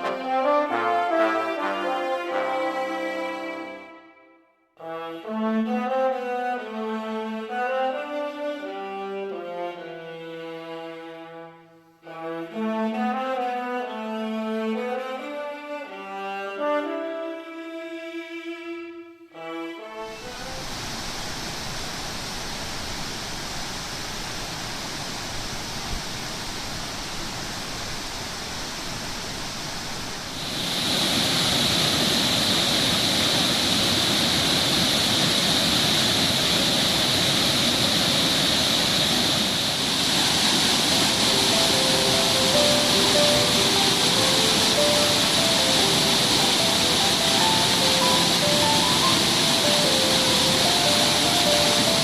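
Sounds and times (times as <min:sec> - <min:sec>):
waterfall rushing: 0:00.0 - 0:03.9, 0:20.1 - 0:52.0.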